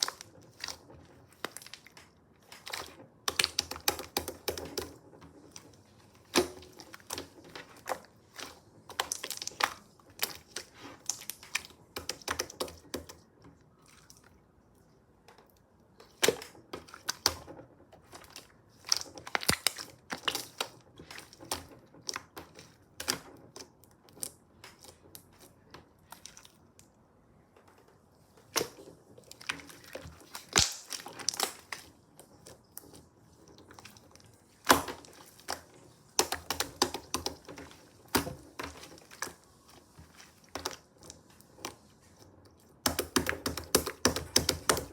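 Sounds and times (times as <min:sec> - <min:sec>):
slime clicking and popping: 0:30.4 - 0:31.7.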